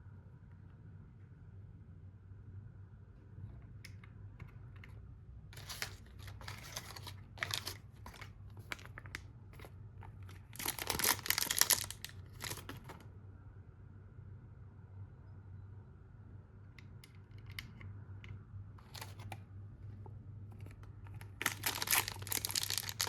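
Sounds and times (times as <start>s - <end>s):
packaging crinkling: 5.6s - 13.0s, 18.8s - 19.4s, 21.1s - 23.0s.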